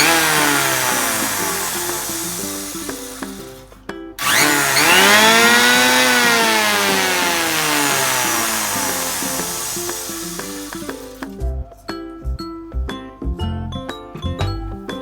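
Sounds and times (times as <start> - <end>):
power tool motor whine: 0.0 - 11.4
background music: 0.0 - 15.0.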